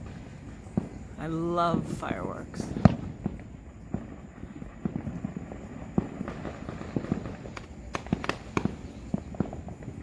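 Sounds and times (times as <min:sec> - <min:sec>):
fireworks popping and banging: 0:00.0 - 0:10.0.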